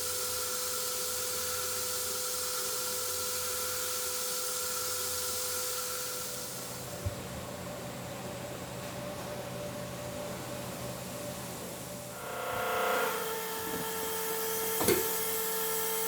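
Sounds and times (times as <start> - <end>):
router spindle whine and hiss: 12.1 - 16.0.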